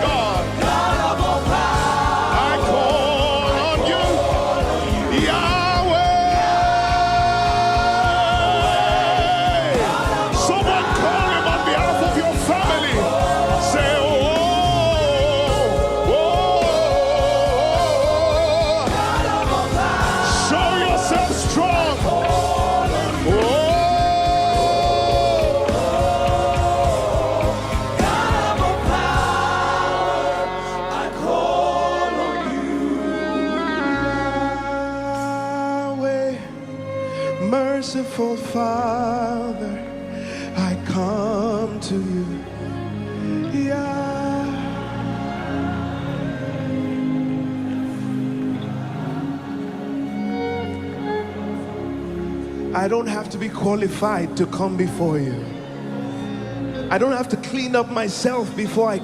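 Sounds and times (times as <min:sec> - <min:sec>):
person singing: 0:00.0 - 0:46.2
bass guitar: 0:00.0 - 0:57.0
gospel band playing: 0:00.0 - 0:59.0
keyboards: 0:00.0 - 0:59.0.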